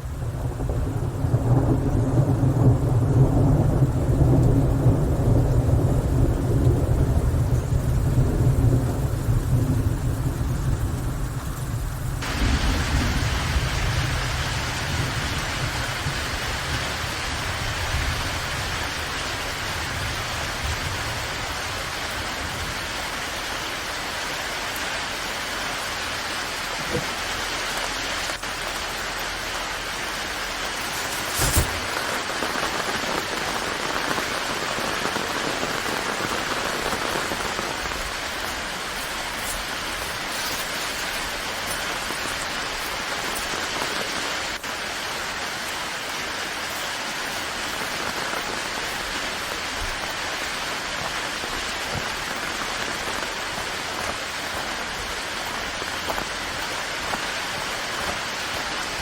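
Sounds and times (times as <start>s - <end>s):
low rumbling thunder: 0.0s - 23.2s
steady falling rain: 0.0s - 59.0s.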